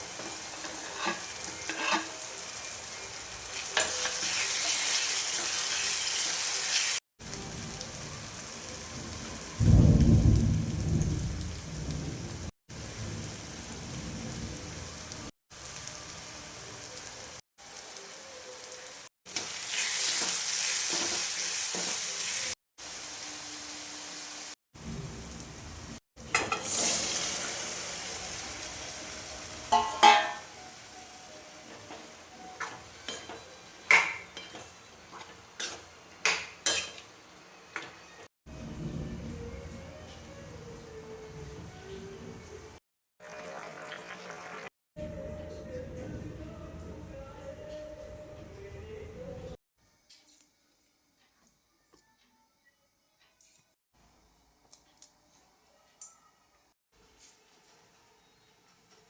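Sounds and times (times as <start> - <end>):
food sizzling in hot oil: 0.0 - 9.7, 10.7 - 38.3, 43.2 - 44.7.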